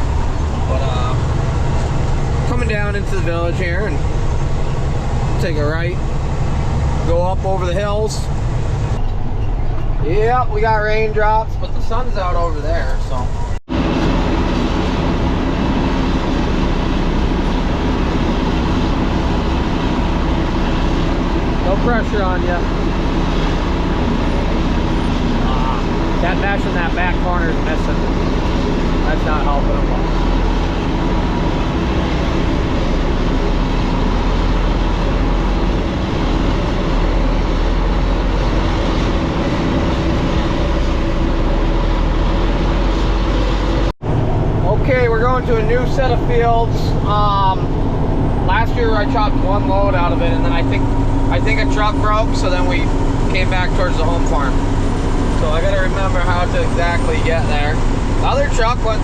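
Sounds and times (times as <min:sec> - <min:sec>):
road and tyre noise: 0:00.0 - 0:59.0
truck engine running: 0:00.0 - 0:59.0
faint constant whine: 0:44.2 - 0:59.0.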